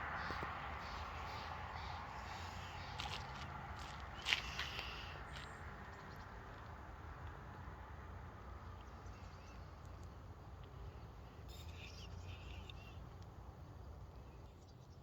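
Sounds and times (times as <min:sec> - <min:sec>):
small bird chirping: 0:11.5 - 0:13.0.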